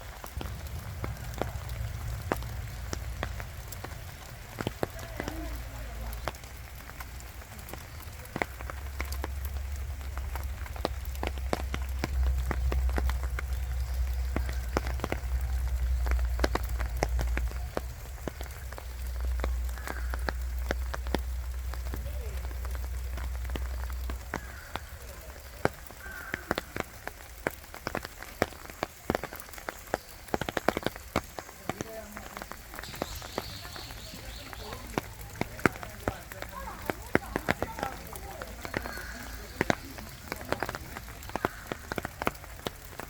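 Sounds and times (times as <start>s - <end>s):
low rumble: 0.0s - 7.6s, 8.2s - 25.0s
rain falling in a forest: 0.0s - 43.0s.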